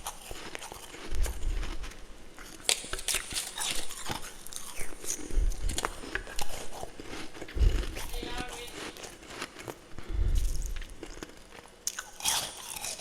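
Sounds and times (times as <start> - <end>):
person chewing ice crunches: 0.0 - 13.0
low thumps: 7.5 - 8.2, 10.1 - 10.8.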